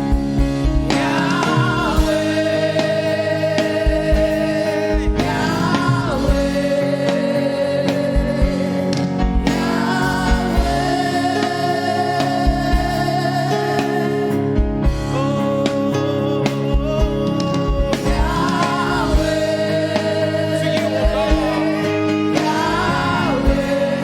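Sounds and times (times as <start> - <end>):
bass drum beat: 0.0 - 3.0, 3.7 - 6.8, 8.0 - 11.2, 16.6 - 19.8, 20.8 - 24.0
gospel singers holding long notes: 0.0 - 24.0
sustained keyboard chords: 0.0 - 24.0.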